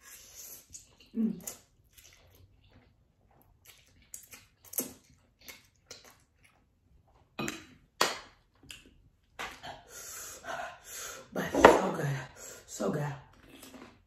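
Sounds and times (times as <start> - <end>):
person chewing noodles: 0.0 - 7.9.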